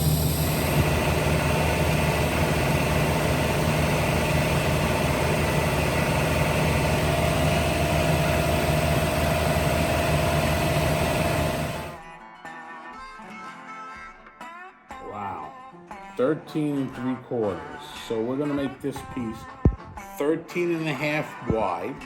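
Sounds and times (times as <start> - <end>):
low hum: 0.0 - 12.0
welding arc crackling hiss: 0.0 - 12.0.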